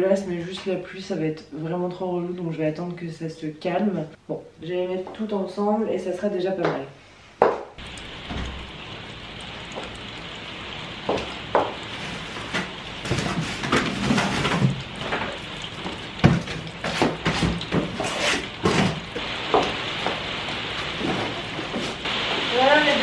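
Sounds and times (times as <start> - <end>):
heavy rain: 7.8 - 23.0.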